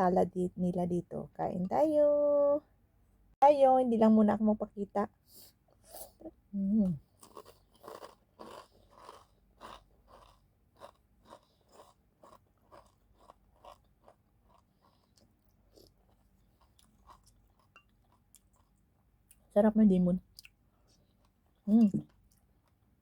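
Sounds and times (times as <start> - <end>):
person chewing food: 7.0 - 19.5, 20.3 - 23.0.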